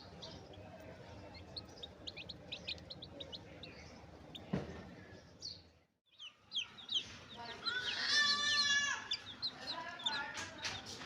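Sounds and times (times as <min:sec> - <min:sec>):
chicks peeping: 0:00.0 - 0:11.0.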